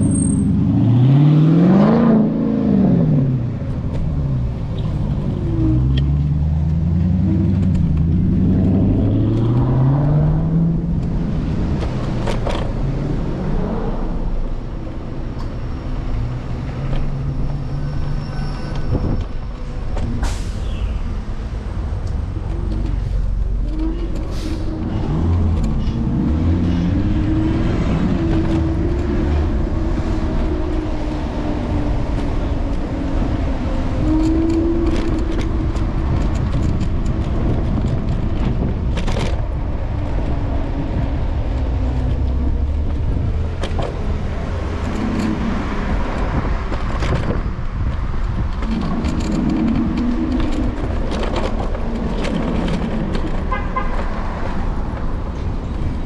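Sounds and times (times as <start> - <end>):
passing vehicles: 0.0 - 56.0
engine rising and falling in pitch: 5.2 - 14.7, 21.5 - 55.2
steady low rumble: 20.8 - 27.2.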